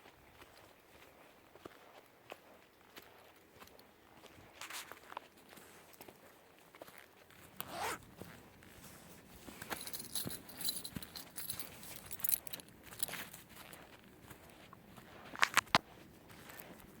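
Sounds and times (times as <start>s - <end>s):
footsteps on woodland trail: 0.0s - 17.0s
clothing rustling: 7.5s - 13.4s.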